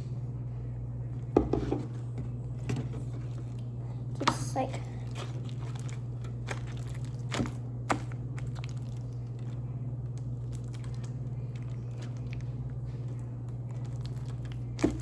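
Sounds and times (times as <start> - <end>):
steady low hum: 0.0 - 15.0
hands kneading sticky slime: 1.9 - 15.0.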